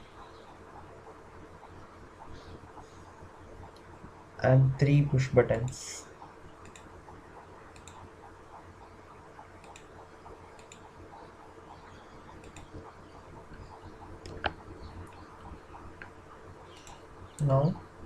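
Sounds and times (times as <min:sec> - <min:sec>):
low steady hum: 0:00.0 - 0:18.0
small clicks: 0:06.6 - 0:06.9, 0:07.7 - 0:08.1, 0:09.6 - 0:09.9, 0:10.5 - 0:10.9, 0:12.3 - 0:12.9.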